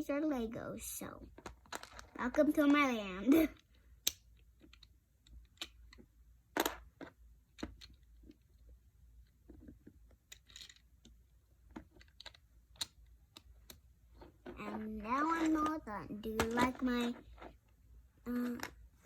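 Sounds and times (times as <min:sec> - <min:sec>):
plastic bricks clicking: 0:04.0 - 0:08.4, 0:09.5 - 0:10.9, 0:11.7 - 0:13.8.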